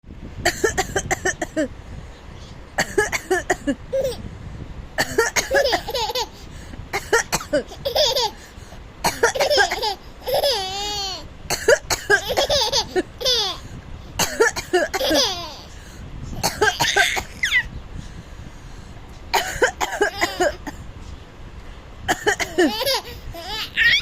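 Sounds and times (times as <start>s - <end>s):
baby laughing: 3.9s - 4.3s, 5.1s - 15.8s, 16.4s - 17.7s, 19.4s - 20.7s, 22.1s - 24.0s
adult coughing: 19.4s - 20.8s.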